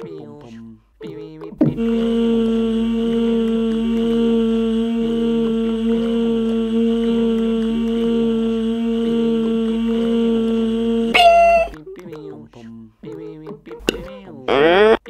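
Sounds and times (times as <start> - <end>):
faint wavering vocal line: 0.0 - 15.0
hummed vocal drone: 1.0 - 12.3.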